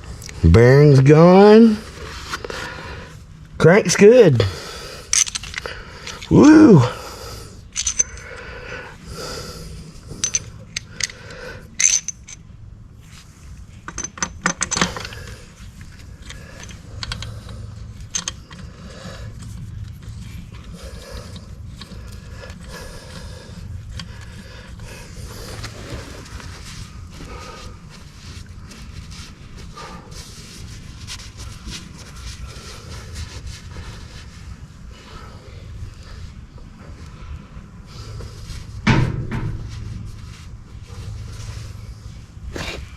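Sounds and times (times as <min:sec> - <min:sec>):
metal parts clinking and scraping: 0:07.8 - 0:08.2, 0:11.8 - 0:12.4.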